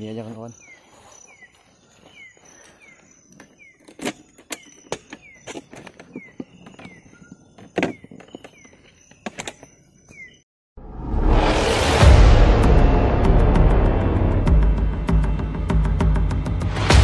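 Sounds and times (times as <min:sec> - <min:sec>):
equipment handling clicks and knocks: 0:03.3 - 0:09.8.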